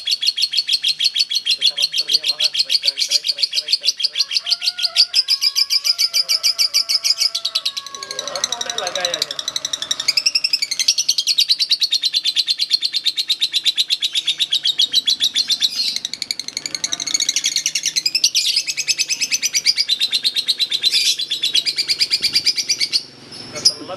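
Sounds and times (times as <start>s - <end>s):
lovebird shrill chatter: 0.0s - 23.9s.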